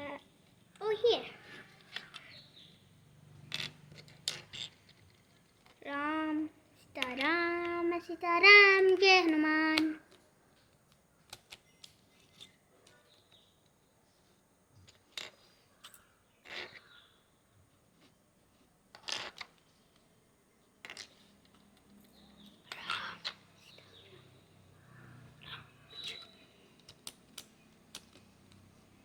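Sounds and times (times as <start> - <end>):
plastic cube pieces clicking: 1.8 - 2.4, 3.6 - 5.8, 7.0 - 7.8, 10.9 - 12.5, 26.0 - 28.7.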